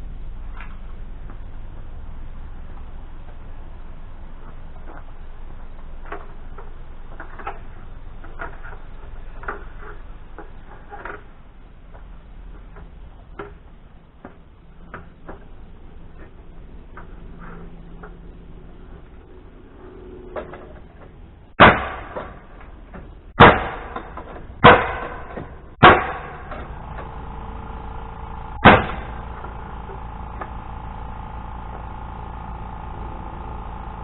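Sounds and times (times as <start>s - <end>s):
sharp knocks with ringing decay: 21.6s - 22.4s, 23.4s - 26.6s, 28.6s - 29.2s.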